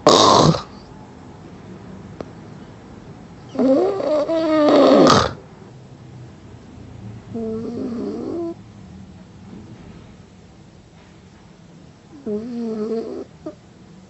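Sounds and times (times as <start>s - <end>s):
man snoring: 0.0s - 0.7s, 3.6s - 5.4s, 12.2s - 13.3s.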